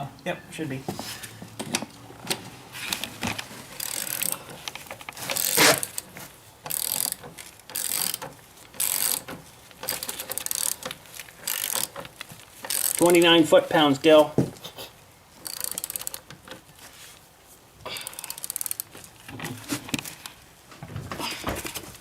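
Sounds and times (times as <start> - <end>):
ratchet wrench clicking: 3.8 - 4.4, 5.3 - 12.0, 12.7 - 13.3, 15.4 - 16.3, 18.1 - 18.9.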